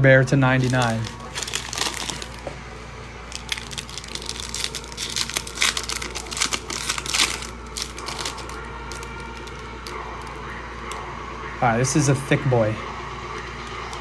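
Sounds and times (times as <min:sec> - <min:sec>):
foil wrapper crinkling: 0:00.5 - 0:02.5, 0:03.2 - 0:10.4.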